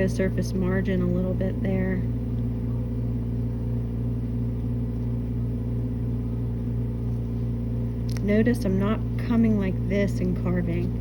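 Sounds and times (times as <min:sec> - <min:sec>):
low electrical hum: 0:00.0 - 0:11.0.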